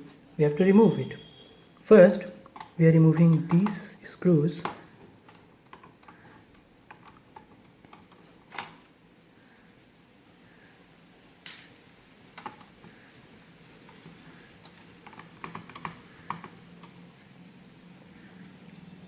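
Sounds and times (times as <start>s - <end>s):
screwdriver clicking on plastic case: 2.4s - 3.9s, 4.6s - 8.8s, 13.9s - 17.0s.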